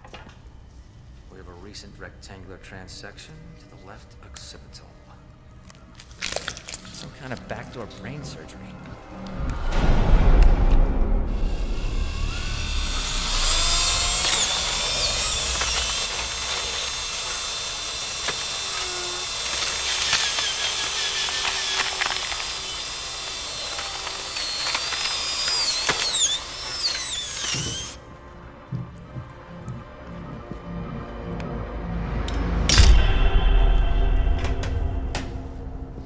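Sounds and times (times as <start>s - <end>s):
power drill whining: 11.4s - 28.0s.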